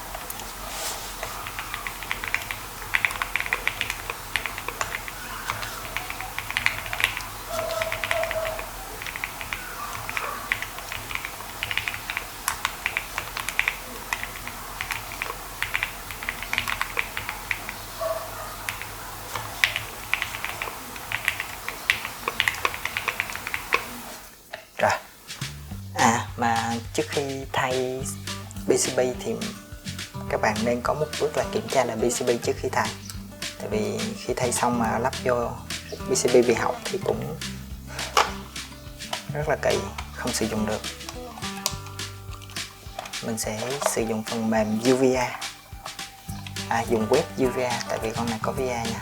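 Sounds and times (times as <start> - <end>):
mechanical keyboard typing: 1.6 - 17.7, 18.7 - 23.8.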